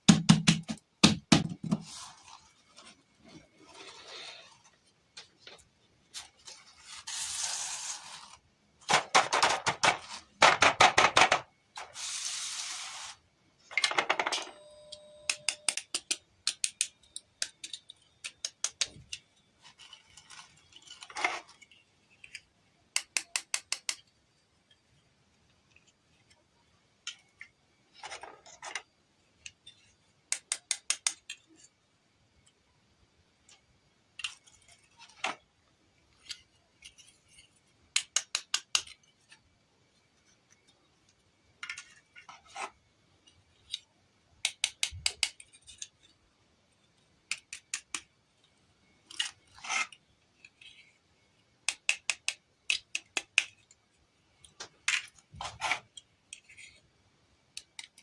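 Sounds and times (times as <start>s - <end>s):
rubbing and handling sounds: 1.6s - 13.2s, 17.6s - 22.6s.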